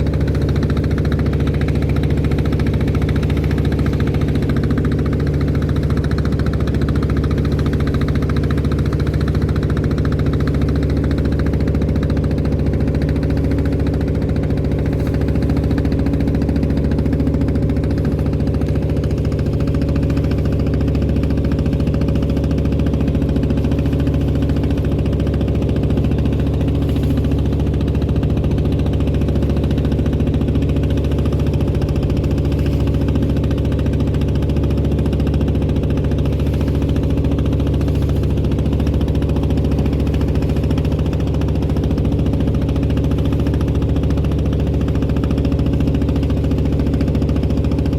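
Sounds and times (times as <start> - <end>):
boat diesel engine droning: 0.0 - 47.9.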